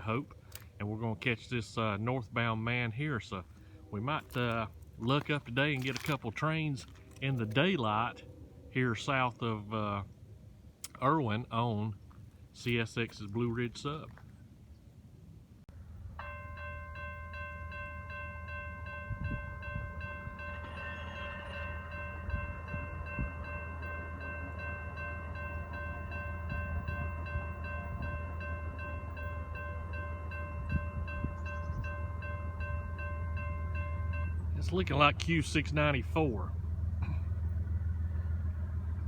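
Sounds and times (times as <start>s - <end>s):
diesel locomotive rumble: 15.7s - 39.0s
locomotive horn blast: 18.6s - 39.0s.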